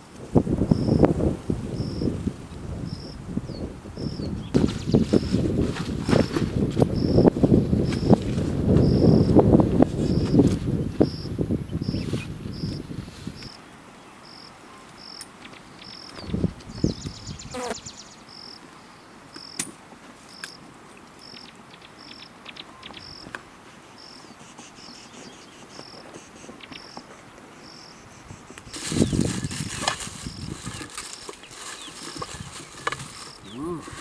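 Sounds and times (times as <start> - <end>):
insect chirping: 0.7 - 1.1, 1.7 - 2.2, 2.9 - 3.2, 6.1 - 8.2, 8.8 - 9.4, 14.2 - 16.2, 16.8 - 18.6, 27.6 - 34.0
rustling and crackling: 4.5 - 6.9, 28.7 - 34.0.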